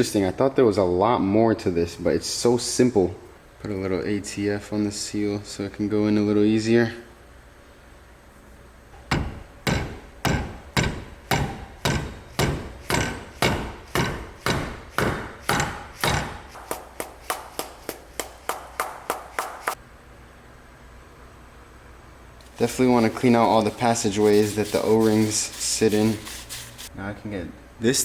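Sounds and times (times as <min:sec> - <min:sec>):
hammer tapping a seal: 0:09.0 - 0:19.8.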